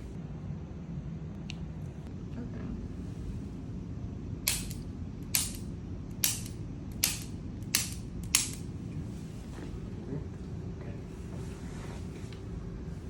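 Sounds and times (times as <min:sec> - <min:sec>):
low background rumble: 0:00.0 - 0:13.0
sharp chiropractic clicks: 0:04.5 - 0:08.7.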